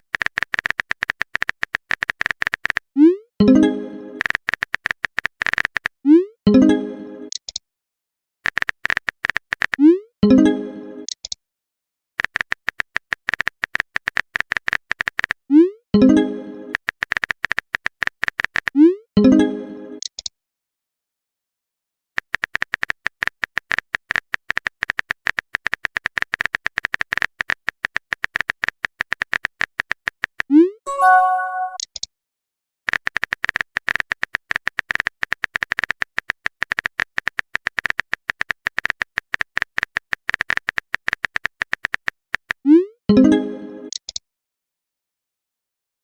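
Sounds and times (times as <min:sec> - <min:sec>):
phone keyboard typing clicks: 0:00.0 - 0:02.8, 0:08.5 - 0:09.8, 0:12.2 - 0:15.4, 0:22.2 - 0:32.1, 0:32.9 - 0:42.6
message notification tones: 0:30.9 - 0:31.8.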